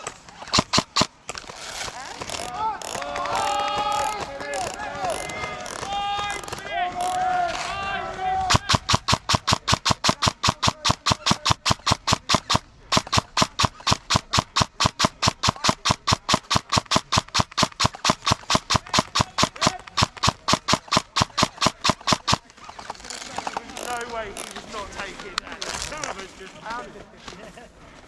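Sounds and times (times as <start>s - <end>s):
airsoft gun firing full-auto: 0.4s - 1.3s, 2.1s - 7.2s, 8.4s - 23.5s.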